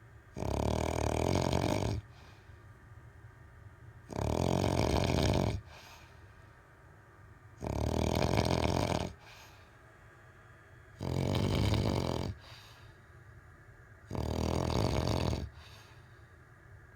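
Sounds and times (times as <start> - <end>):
quiet breaths: 0.0 - 16.8
man snoring: 0.4 - 2.1, 4.1 - 5.7, 7.6 - 9.2, 11.0 - 12.5, 14.1 - 15.7.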